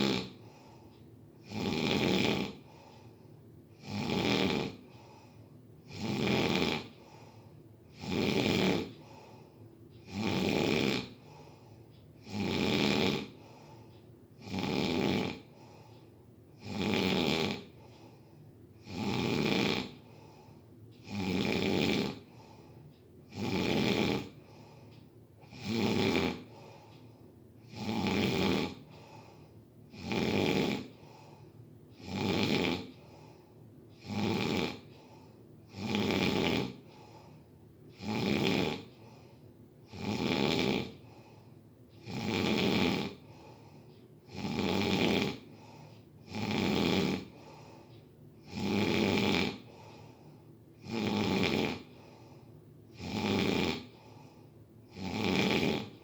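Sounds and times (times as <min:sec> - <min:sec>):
rhythmic snoring: 0:00.0 - 0:56.0.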